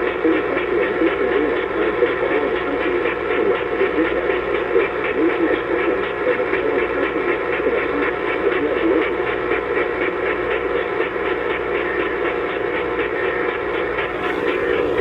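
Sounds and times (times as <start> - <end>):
radio static hiss and hum: 14.0 - 15.0.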